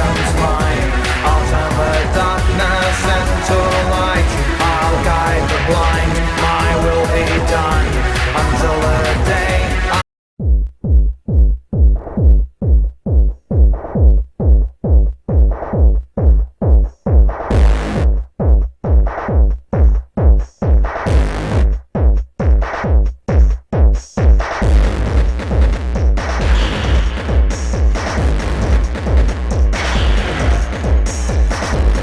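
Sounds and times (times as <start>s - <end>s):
rising noise swells: 0.0s - 10.0s
synth layer: 0.0s - 10.0s, 26.4s - 32.0s
synth-bass stabs: 0.0s - 10.0s, 17.5s - 18.2s, 21.0s - 21.8s, 24.4s - 32.0s
drum-machine kick: 0.0s - 32.0s.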